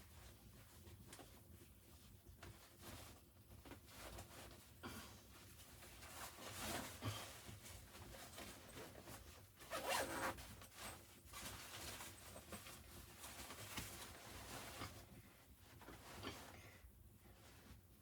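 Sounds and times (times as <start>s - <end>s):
zipper rasping: 9.7s - 10.4s.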